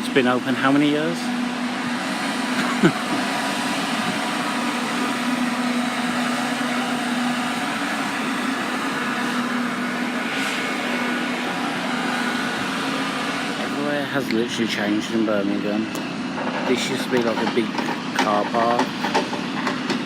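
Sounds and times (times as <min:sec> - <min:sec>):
mechanical hum: 0:00.0 - 0:20.0.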